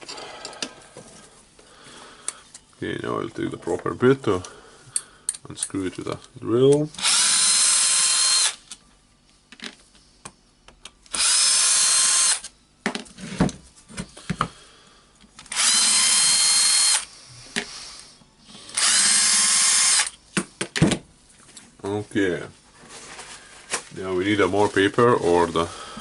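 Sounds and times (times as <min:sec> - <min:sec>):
cordless drill motor whining: 0:07.0 - 0:08.6, 0:11.1 - 0:12.5, 0:15.5 - 0:17.1, 0:18.6 - 0:20.2.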